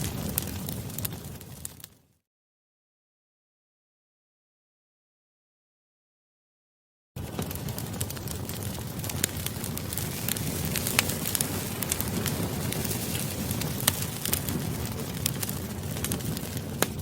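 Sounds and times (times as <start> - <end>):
campfire flames rumbling: 0.0 - 2.1, 7.2 - 17.0
wood crackling and popping: 0.0 - 2.1, 7.2 - 17.0.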